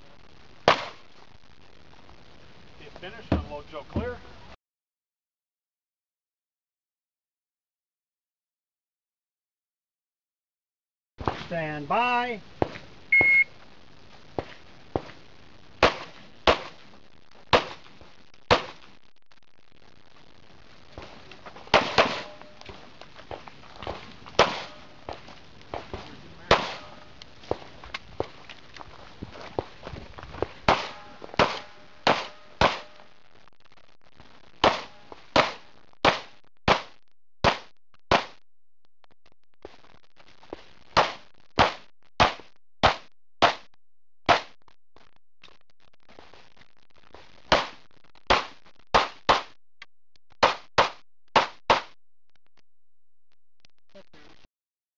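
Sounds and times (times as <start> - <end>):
shot timer beep: 13.1 - 13.5
pistol shots: 21.7 - 22.4, 26.5 - 26.9, 30.7 - 33.0.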